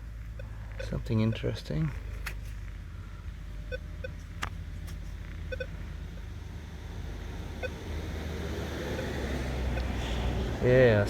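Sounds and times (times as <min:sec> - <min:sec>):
low steady rumble: 0:00.0 - 0:11.0
metal detector beeps: 0:00.4 - 0:01.6.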